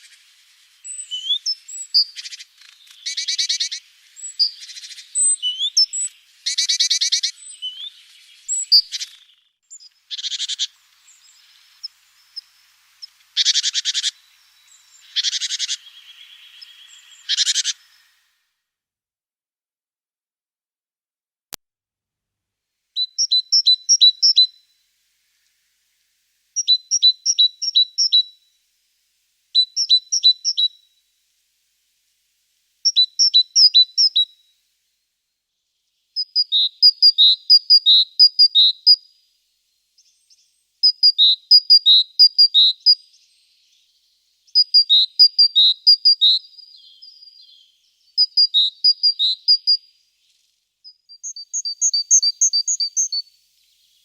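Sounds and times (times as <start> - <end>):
songbird singing: 0.0 - 18.4, 23.0 - 28.7, 29.5 - 31.1, 32.2 - 34.6, 35.5 - 54.0.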